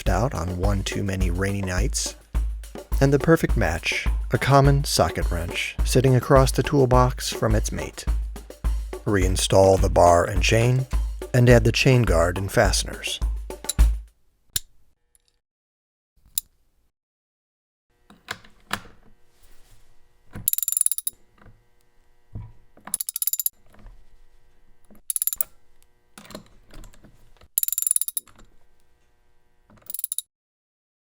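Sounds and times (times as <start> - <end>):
socket wrench ratcheting: 13.6 - 13.9, 20.4 - 21.2, 22.8 - 23.6, 25.0 - 25.6, 27.6 - 28.4, 29.8 - 30.3.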